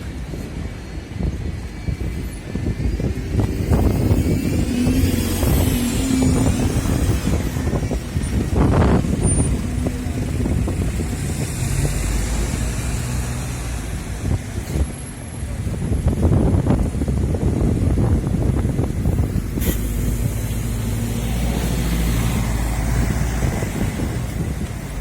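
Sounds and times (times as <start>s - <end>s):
buses and traffic passing: 0.0s - 25.0s
wind buffeting microphone: 0.0s - 25.0s
short hiss: 19.6s - 20.0s.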